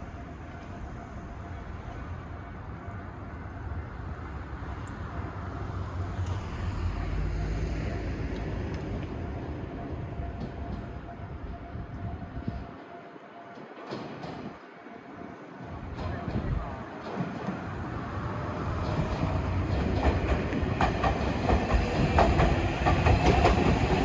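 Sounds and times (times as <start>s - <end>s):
electric train rumbling past: 0.0s - 24.0s.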